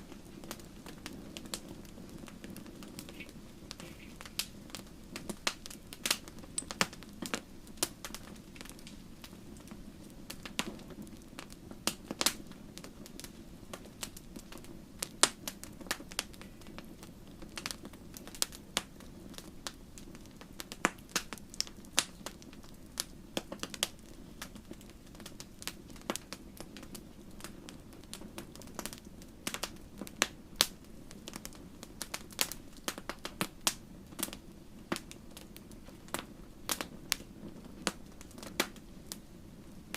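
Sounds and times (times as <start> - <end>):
low rush of flames: 0.0 - 39.9
wood fire crackling and popping: 0.0 - 39.9.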